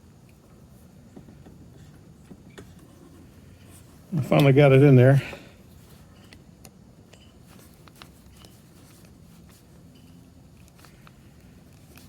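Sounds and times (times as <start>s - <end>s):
small clicks and handling noise: 5.8s - 12.0s.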